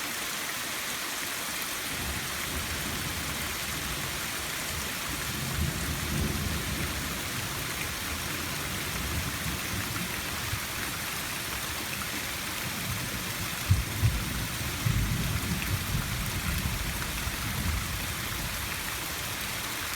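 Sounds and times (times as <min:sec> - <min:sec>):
steady rain hiss: 0:00.0 - 0:19.9
rumbles of thunder: 0:01.9 - 0:10.7, 0:12.8 - 0:18.7.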